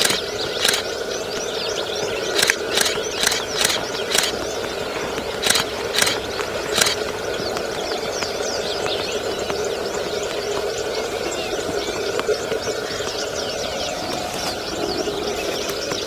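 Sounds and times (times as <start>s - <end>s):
sharp clicks: 0.0s - 1.5s, 2.2s - 8.3s
small birds chirping: 0.0s - 16.0s.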